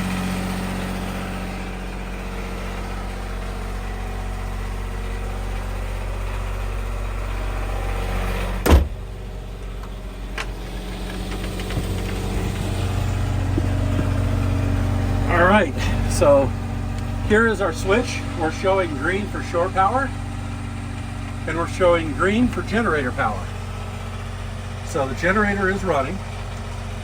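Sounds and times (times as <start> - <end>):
diesel generator idling: 0.0 - 27.0.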